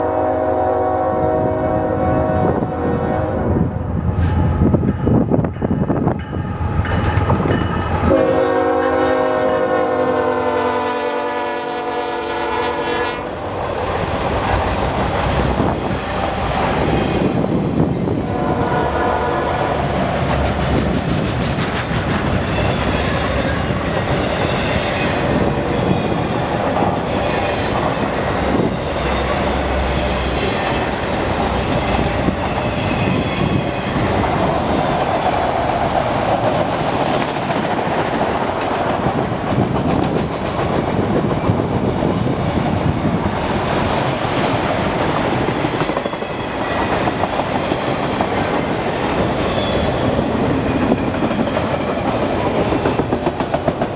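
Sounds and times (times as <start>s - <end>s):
steel wheels on rails: 4.1s - 53.9s
faint high wheel squeal: 49.0s - 50.2s.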